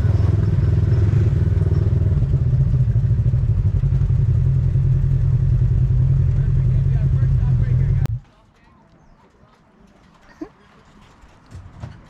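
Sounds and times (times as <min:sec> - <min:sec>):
atv engine running: 0:00.0 - 0:08.2.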